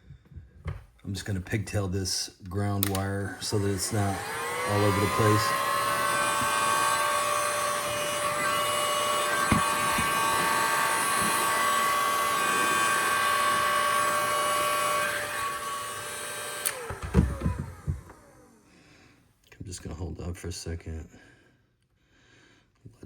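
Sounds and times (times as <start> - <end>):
click: 2.4 - 3.1
heat gun blowing with fan whine: 2.8 - 18.6.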